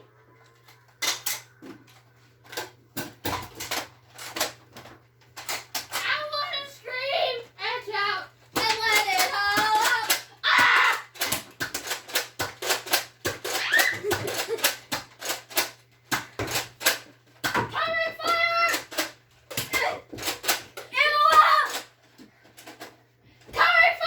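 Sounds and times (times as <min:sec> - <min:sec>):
rapid sharp clicks and knocks: 0:08.5 - 0:22.9
children shouting: 0:09.4 - 0:11.2, 0:13.6 - 0:14.2.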